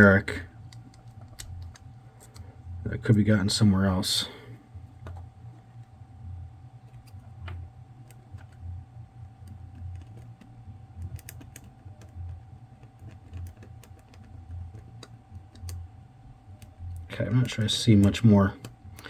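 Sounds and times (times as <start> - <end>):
low pulsing hum: 0.0 - 19.0
light clicks and taps: 16.6 - 19.0.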